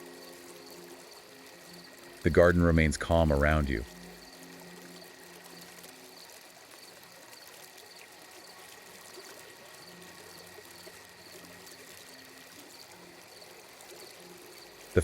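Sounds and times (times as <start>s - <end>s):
fountain water flowing: 0.0s - 15.0s.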